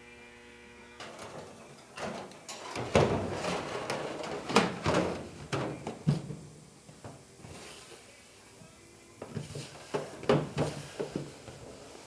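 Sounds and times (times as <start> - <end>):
objects knocking and clattering: 1.0 - 6.4.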